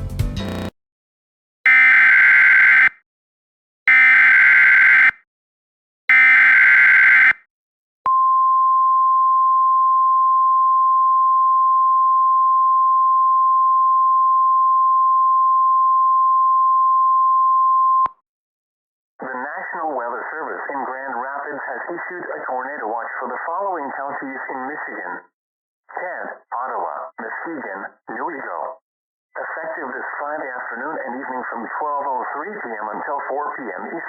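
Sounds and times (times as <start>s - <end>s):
steady warning alarm tone: 1.7s - 2.9s, 3.9s - 5.2s, 6.1s - 7.4s.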